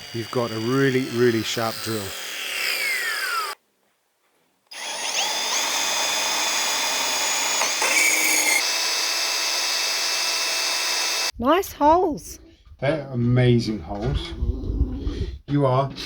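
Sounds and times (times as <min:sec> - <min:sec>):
electric drill whining: 0:00.0 - 0:03.6, 0:04.7 - 0:11.3.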